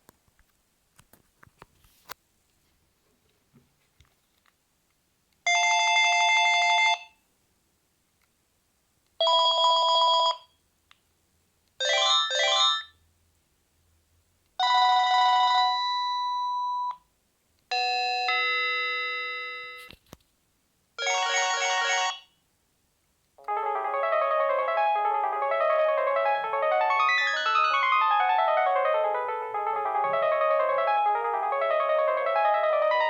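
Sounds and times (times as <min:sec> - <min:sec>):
electronic ringtone melodies: 0:17.7 - 0:19.9, 0:21.0 - 0:22.3, 0:23.4 - 0:33.0.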